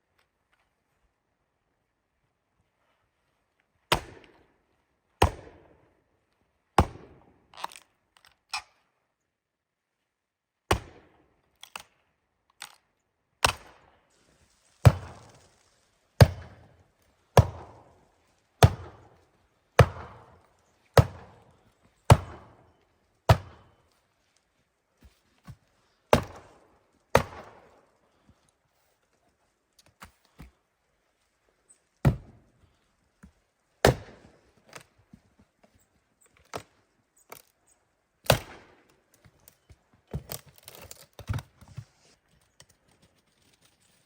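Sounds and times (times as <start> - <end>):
axe chopping wood: 3.9 - 4.3, 5.2 - 5.6, 6.8 - 7.3, 10.7 - 11.0, 16.2 - 16.7, 17.4 - 17.9, 18.6 - 19.1, 19.8 - 20.4, 21.0 - 21.5, 22.1 - 22.6, 23.3 - 23.7, 25.4 - 26.5, 27.1 - 27.6, 32.0 - 32.4, 33.8 - 34.8, 38.2 - 38.7.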